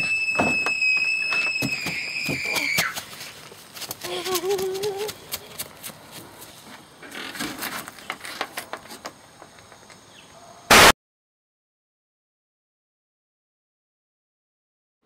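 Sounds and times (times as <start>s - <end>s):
loud burst of noise: 10.7s - 11.0s.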